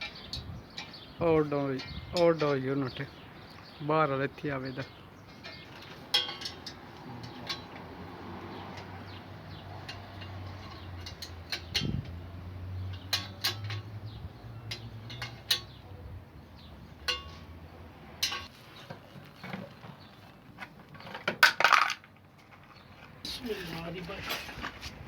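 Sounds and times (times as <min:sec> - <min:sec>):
metallic clinks and knocks: 0:05.3 - 0:16.0, 0:17.0 - 0:17.6, 0:18.2 - 0:19.7.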